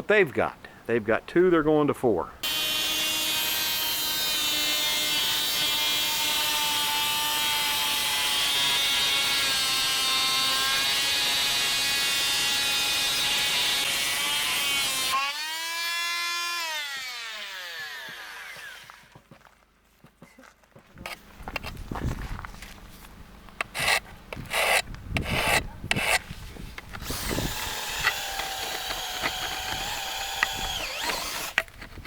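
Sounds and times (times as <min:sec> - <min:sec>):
electric saw cutting metal: 0:02.4 - 0:19.1, 0:27.0 - 0:31.7
saw blade spinning down: 0:27.0 - 0:31.6.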